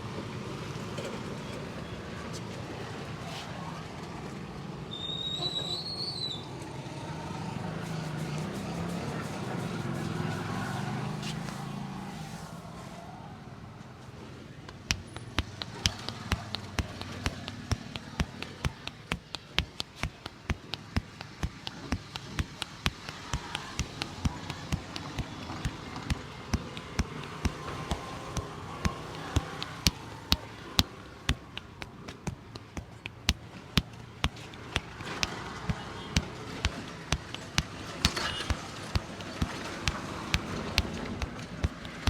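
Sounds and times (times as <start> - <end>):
hands slapping in massage: 14.7 - 42.0.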